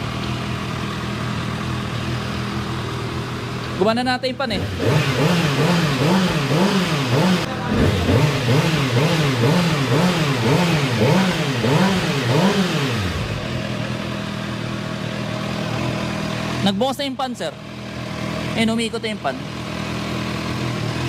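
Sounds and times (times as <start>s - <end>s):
motorcycle engine revving: 0.0s - 21.0s.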